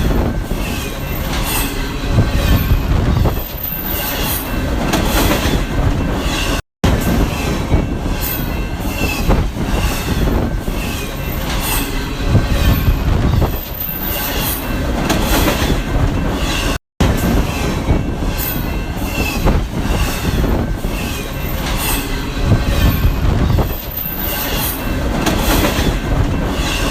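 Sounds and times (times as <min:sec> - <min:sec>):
train cars rumbling past: 0:00.0 - 0:26.9
wheels clacking over rail joints: 0:00.0 - 0:26.9
high-pitched wheel squeals: 0:08.2 - 0:14.8.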